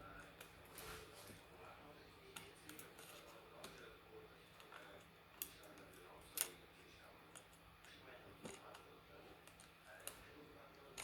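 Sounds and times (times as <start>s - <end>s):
faint sharp clicks and taps: 2.3s - 3.9s, 4.5s - 6.6s, 7.3s - 11.0s.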